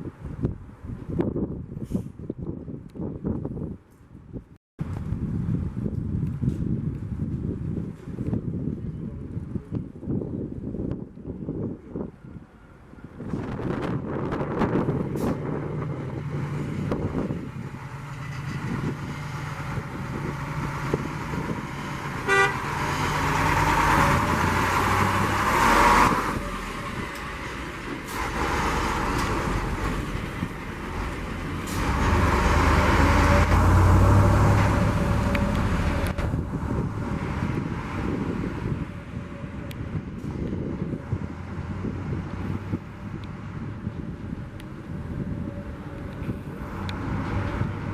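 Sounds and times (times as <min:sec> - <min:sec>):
diesel fire engine running: 0:12.8 - 0:47.9
air horn blast: 0:22.2 - 0:22.8.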